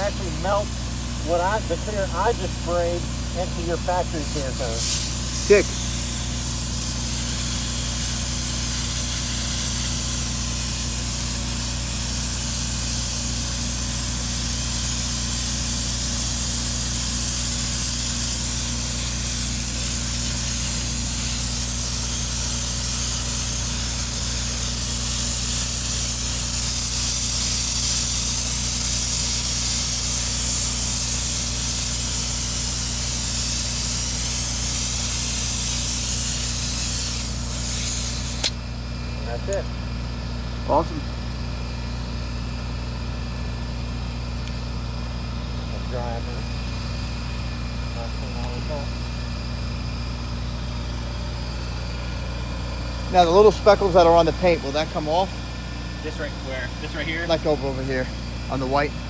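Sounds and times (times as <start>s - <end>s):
spray hissing: 0.0s - 38.6s.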